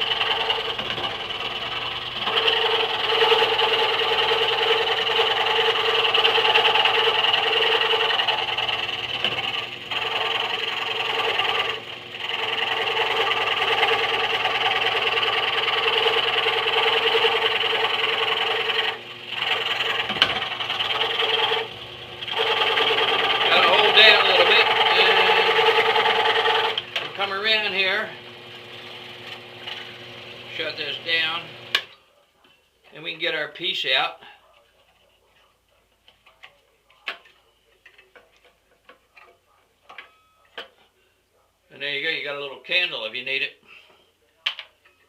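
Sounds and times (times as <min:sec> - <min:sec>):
scroll saw cutting wood: 0:00.0 - 0:31.9.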